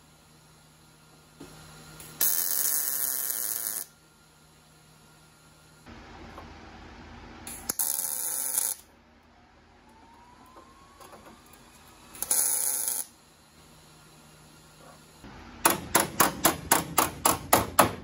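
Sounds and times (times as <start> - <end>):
tack welds hissing: 7.5 - 8.8, 12.1 - 13.1.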